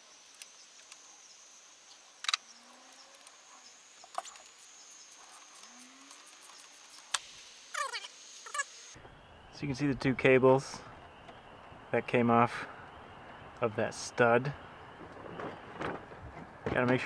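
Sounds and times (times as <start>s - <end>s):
high-pitched insect chirring: 0.3s - 10.6s.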